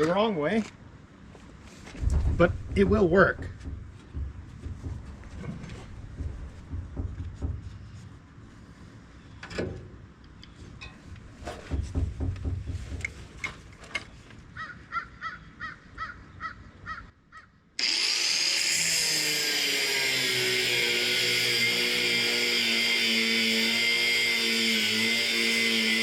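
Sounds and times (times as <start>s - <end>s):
tools knocking and scraping: 1.9s - 8.1s, 10.8s - 14.1s
power tool running under load: 17.8s - 26.0s.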